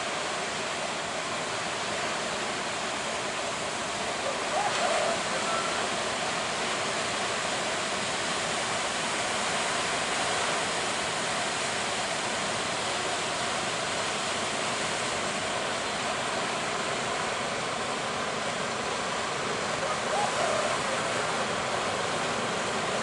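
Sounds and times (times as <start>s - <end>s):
heavy surf roaring: 0.0s - 23.0s.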